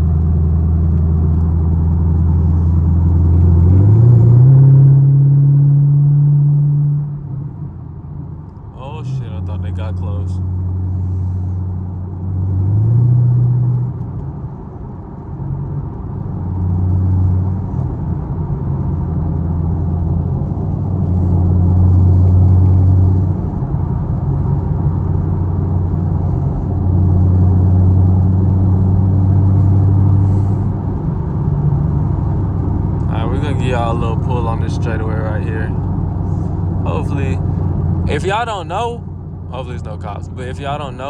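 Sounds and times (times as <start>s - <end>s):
car engine and exhaust droning: 0.0s - 41.0s.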